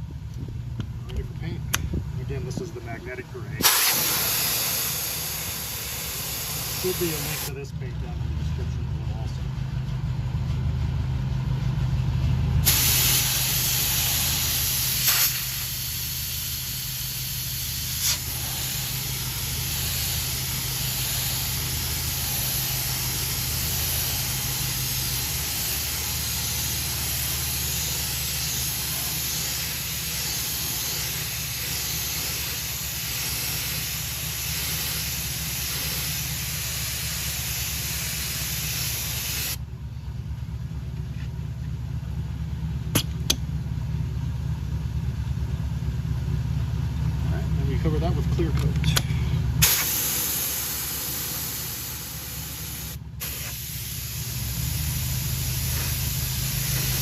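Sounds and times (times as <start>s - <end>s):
paint spray hiss: 3.6s - 7.5s, 12.6s - 39.6s, 49.6s - 57.0s.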